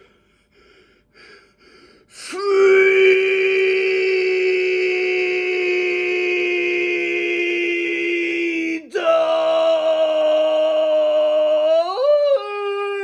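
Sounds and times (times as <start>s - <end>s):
man shouting: 11.8s - 13.0s.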